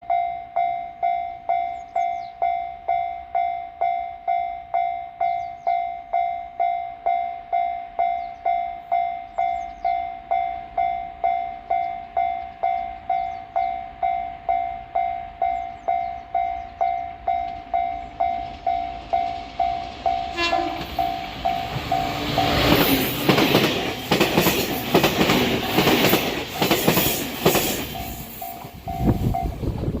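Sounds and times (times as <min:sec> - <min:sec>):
level-crossing bell ringing: 0:00.0 - 0:22.8
train wheels clattering: 0:15.5 - 0:29.8
train horn toot: 0:20.2 - 0:22.8.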